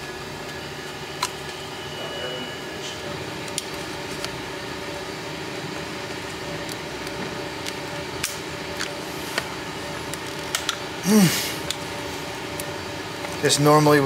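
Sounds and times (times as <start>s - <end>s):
steady hum: 0.0s - 14.0s
person grunting: 11.0s - 11.6s.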